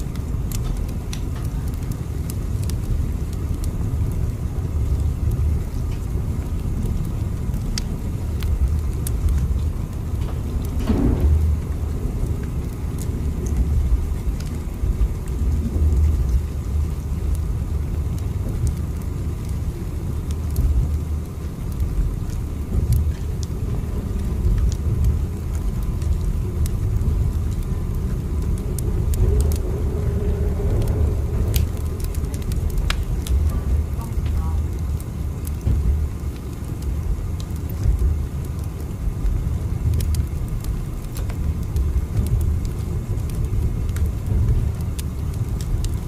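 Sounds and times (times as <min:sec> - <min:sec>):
train rumbling: 0:05.2 - 0:18.8, 0:21.6 - 0:36.2, 0:41.5 - 0:46.0.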